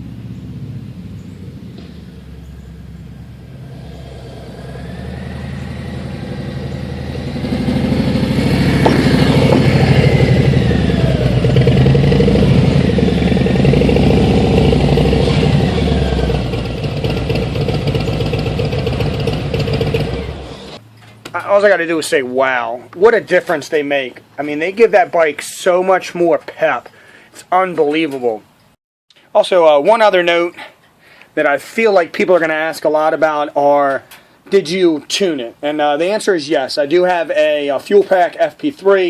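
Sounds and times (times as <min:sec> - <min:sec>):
motorcycle engine revving: 0:00.0 - 0:20.8.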